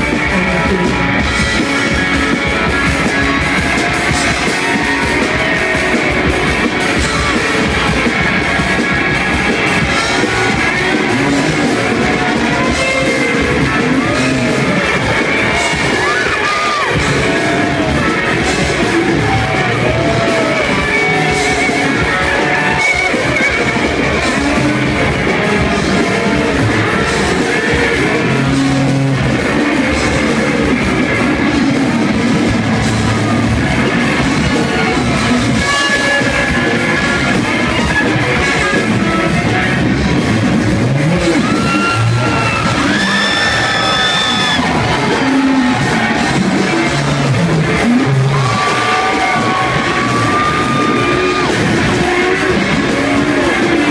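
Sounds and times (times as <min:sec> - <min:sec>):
distorted electric guitar: 0:00.0 - 0:53.9
drums: 0:00.0 - 0:53.9.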